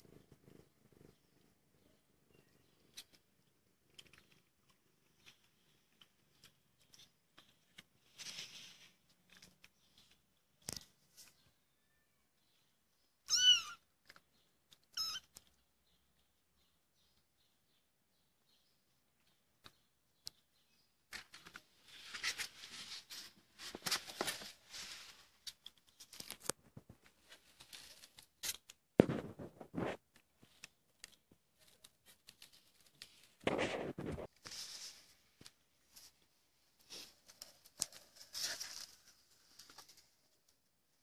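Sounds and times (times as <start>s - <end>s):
scratching and rustling: 2.6s - 11.4s, 21.1s - 40.7s.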